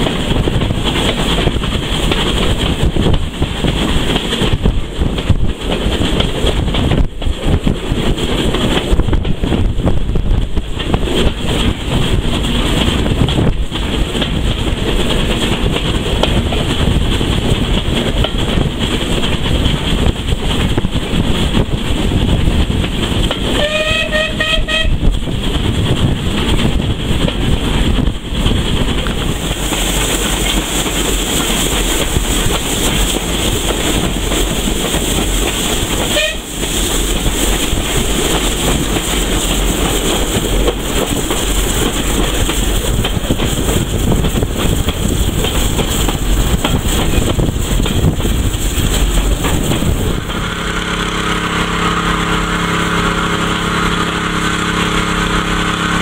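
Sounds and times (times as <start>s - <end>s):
train rumble and wheel clatter: 0.0s - 56.0s
train whistle: 23.6s - 25.1s, 36.1s - 36.5s.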